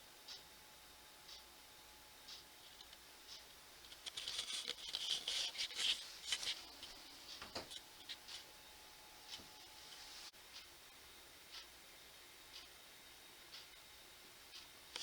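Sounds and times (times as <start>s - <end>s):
dry rustling and crackling: 3.8s - 8.4s.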